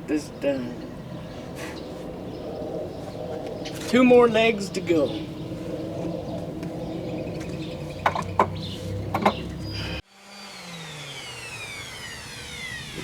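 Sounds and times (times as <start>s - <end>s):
light knocks: 8.0s - 9.5s
power tool motor running: 8.5s - 13.0s.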